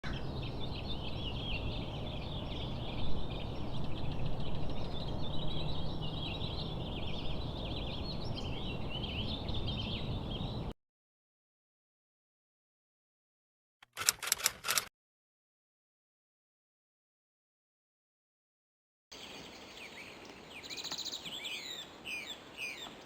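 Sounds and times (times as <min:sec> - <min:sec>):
small birds chirping: 0:00.0 - 0:10.7, 0:19.1 - 0:23.0.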